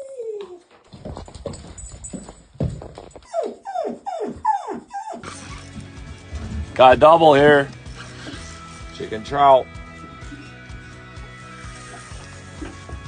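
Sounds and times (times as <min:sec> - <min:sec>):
dog whining: 0:00.0 - 0:00.8, 0:03.2 - 0:05.8.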